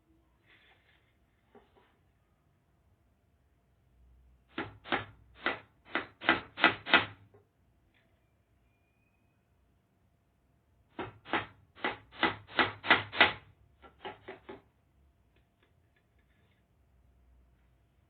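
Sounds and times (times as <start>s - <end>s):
hammer driving nail into wood: 4.5s - 7.2s, 10.9s - 14.6s.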